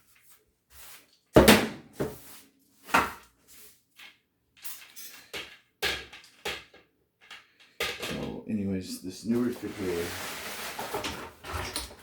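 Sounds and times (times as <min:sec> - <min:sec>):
objects knocking and scraping: 0:04.0 - 0:08.4, 0:09.3 - 0:12.0.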